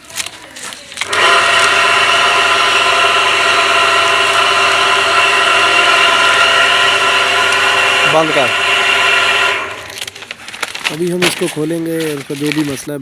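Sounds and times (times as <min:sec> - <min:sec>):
water pump motor whining hum: 0:01.0 - 0:10.3.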